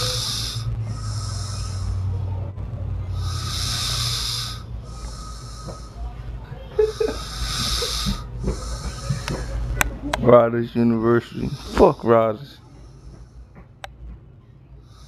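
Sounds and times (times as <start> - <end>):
woman snoring: 0.0 - 2.4, 3.0 - 6.1, 6.8 - 9.6
low steady hum: 0.0 - 15.0.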